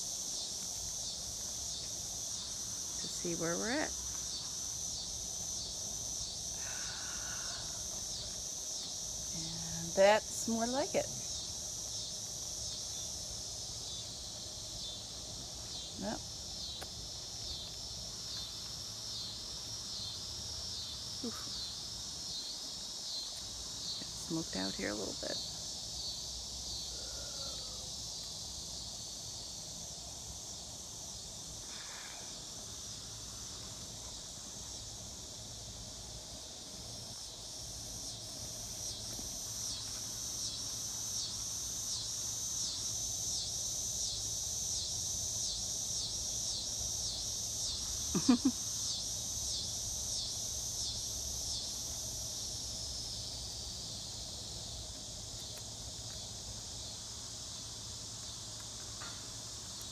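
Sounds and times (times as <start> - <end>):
insects shrilling: 0.0 - 29.7, 36.8 - 59.9.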